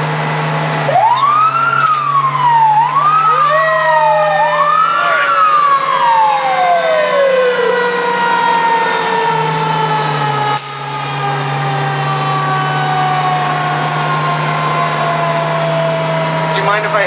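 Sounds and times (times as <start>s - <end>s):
truck engine droning: 0.0s - 17.0s
mechanical siren wailing: 0.6s - 17.0s.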